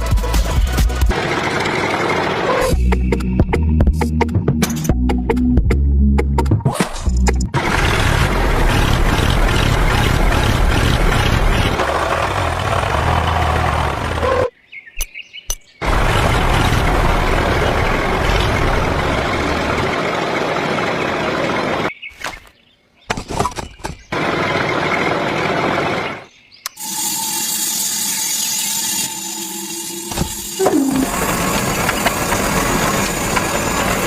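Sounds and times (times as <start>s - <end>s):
machine running loudly: 0.1s - 2.8s, 7.6s - 14.2s, 15.8s - 21.9s, 26.8s - 34.0s.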